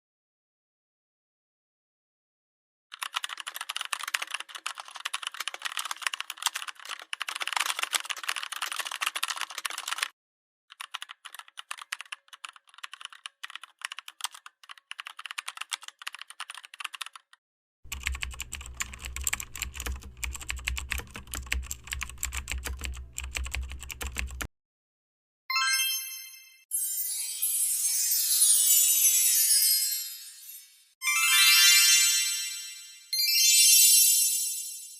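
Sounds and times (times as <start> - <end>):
rapid keyboard typing: 2.9 - 24.5.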